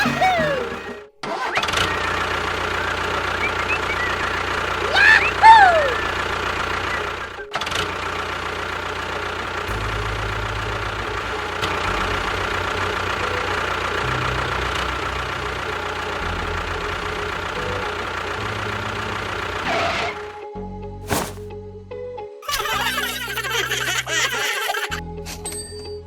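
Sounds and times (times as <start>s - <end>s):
engine idling: 0.0s - 20.4s.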